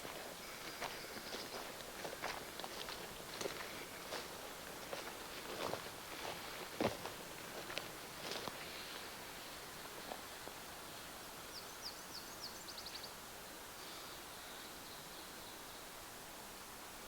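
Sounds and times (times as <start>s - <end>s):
faint steady hiss: 0.0s - 17.0s
small bird singing: 11.5s - 13.2s.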